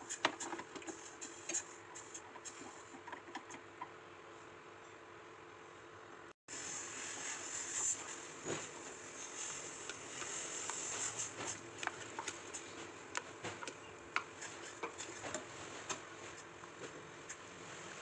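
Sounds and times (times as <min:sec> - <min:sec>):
steady cooking hiss: 0:00.0 - 0:03.2, 0:06.5 - 0:18.0.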